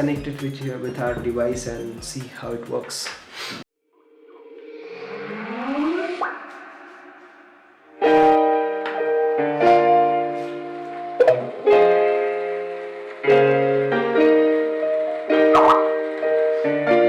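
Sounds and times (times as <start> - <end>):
piano chords through a speaker: 4.7 - 17.0.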